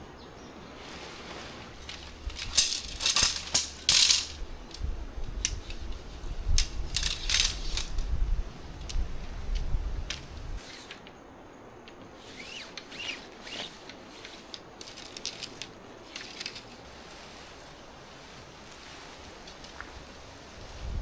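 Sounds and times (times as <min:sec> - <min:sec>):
rustling and handling clicks: 0:00.9 - 0:11.2, 0:11.9 - 0:17.3.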